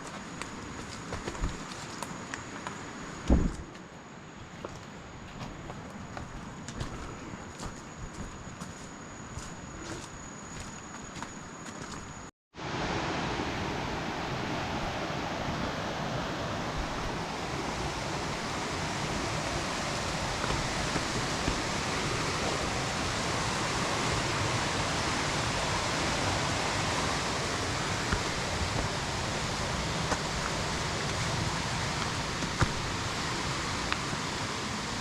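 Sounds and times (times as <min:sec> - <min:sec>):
water rushing: 0:12.6 - 0:35.0.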